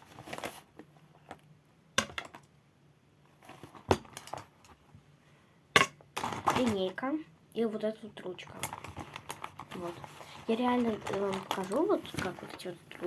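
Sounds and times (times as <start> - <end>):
pens and ruler clacking: 8.5 - 13.0.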